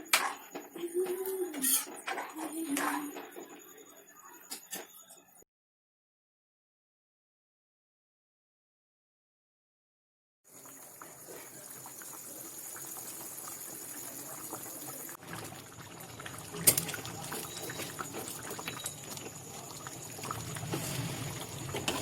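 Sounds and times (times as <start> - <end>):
food bubbling in a pan: 10.5 - 22.0.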